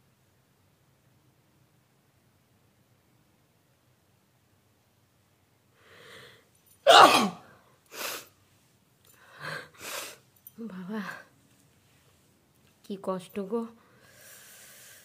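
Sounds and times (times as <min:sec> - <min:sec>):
short breaths: 0:05.8 - 0:06.5, 0:07.9 - 0:08.3, 0:09.1 - 0:10.2, 0:13.8 - 0:15.0
woman sneezing: 0:06.9 - 0:07.4
gasping in-breath: 0:09.2 - 0:10.2, 0:13.9 - 0:15.0
woman speaking: 0:10.6 - 0:11.3, 0:12.8 - 0:13.8.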